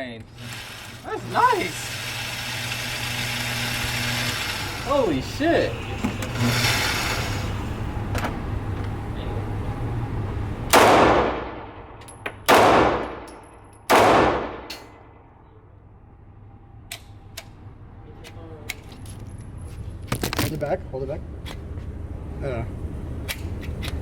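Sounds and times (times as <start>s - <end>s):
pistol shots with echo: 10.7s - 13.3s, 13.9s - 15.0s.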